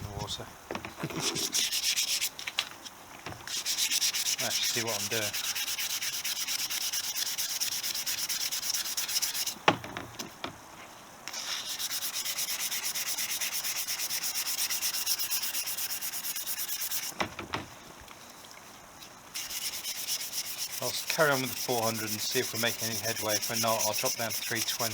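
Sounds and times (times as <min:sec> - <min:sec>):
wet sandpaper rubbing on metal tube: 0:01.2 - 0:02.4, 0:03.5 - 0:09.6, 0:11.3 - 0:17.2, 0:19.3 - 0:24.9.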